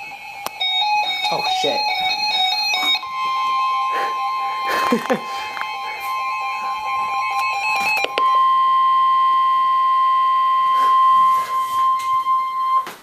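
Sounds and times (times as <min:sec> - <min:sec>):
high-pitched alert tone: 0:00.5 - 0:09.5
clicks: 0:07.3 - 0:08.4.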